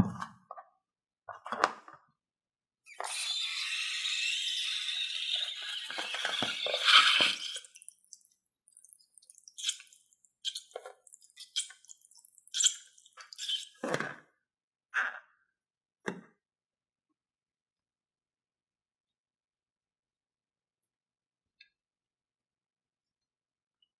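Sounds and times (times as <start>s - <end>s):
slime pouring from balloon: 2.9s - 8.0s
wet drips and sticky plops: 6.9s - 13.8s.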